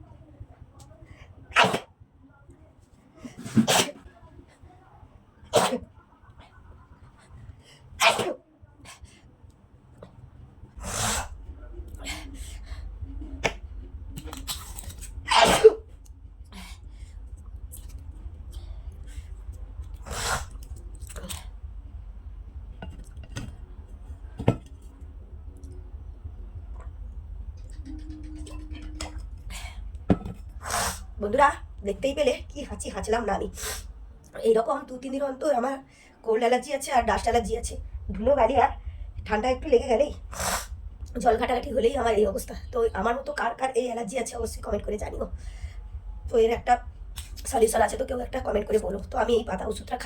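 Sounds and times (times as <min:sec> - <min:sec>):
steady low hum: 0:00.0 - 0:50.0
person sneezing: 0:08.0 - 0:08.4, 0:15.3 - 0:15.8.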